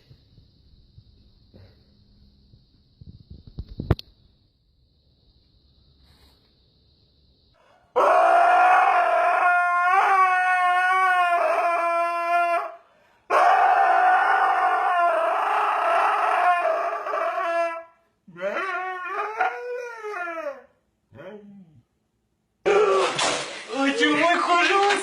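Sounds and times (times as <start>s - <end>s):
husky puppy howling: 8.0s - 20.7s.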